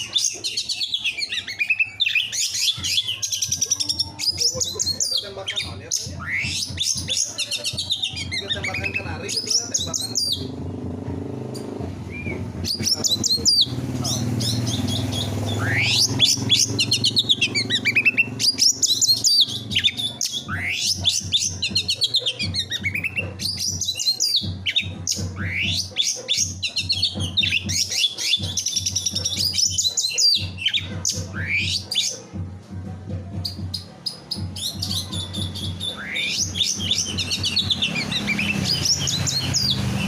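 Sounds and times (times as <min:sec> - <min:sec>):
canary singing trills: 0:00.0 - 0:32.4, 0:33.3 - 0:40.0.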